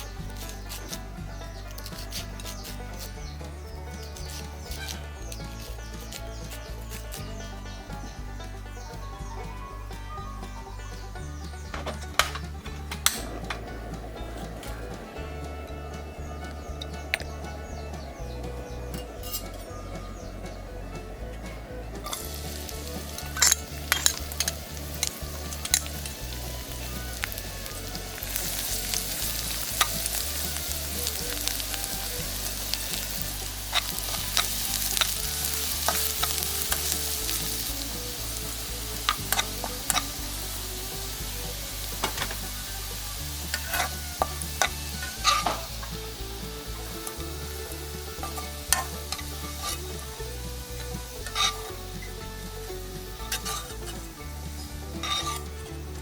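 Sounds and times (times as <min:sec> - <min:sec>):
spatula scraping a pan: 0:00.0 - 0:07.6, 0:18.9 - 0:19.7, 0:22.0 - 0:50.2, 0:50.9 - 0:52.4, 0:53.0 - 0:54.2, 0:54.9 - 0:55.7
food sizzling in a hot pan: 0:22.0 - 0:55.7.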